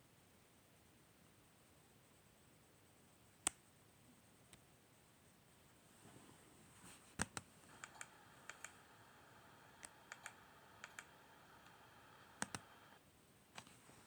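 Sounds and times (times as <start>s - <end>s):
faint high-pitched hum: 7.5s - 14.0s.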